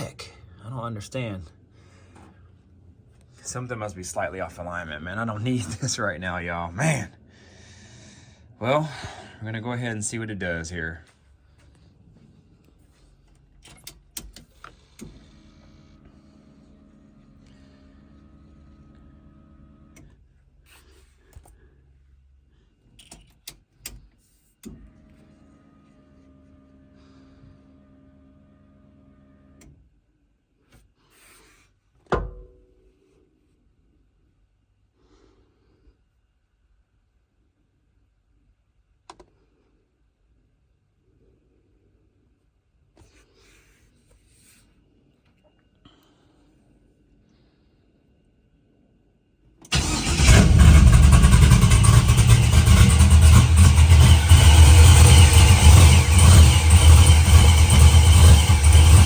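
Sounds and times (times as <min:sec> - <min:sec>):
loud car engine running: 0:49.7 - 0:59.0.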